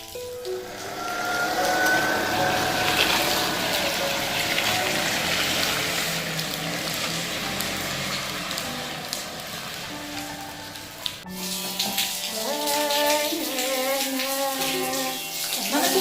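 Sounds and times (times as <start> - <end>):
faint held musical notes: 0.0 - 16.0
steady rushing noise: 0.4 - 11.2.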